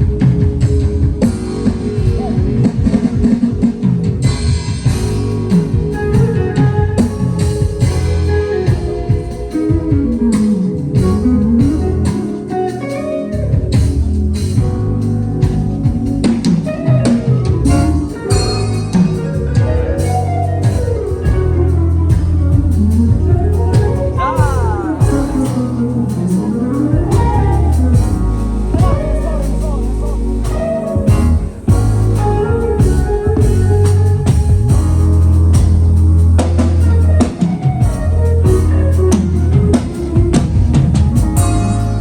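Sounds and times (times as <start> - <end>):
drum kit: 0.0 - 42.0
live band playing instrumental: 0.0 - 42.0
steady bass: 0.0 - 42.0
melodic lines sliding in pitch: 36.9 - 42.0.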